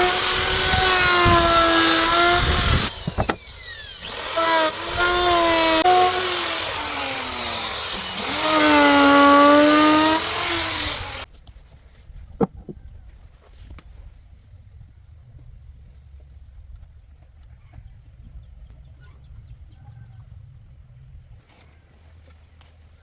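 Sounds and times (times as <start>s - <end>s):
power tool cutting wood: 0.0s - 11.3s.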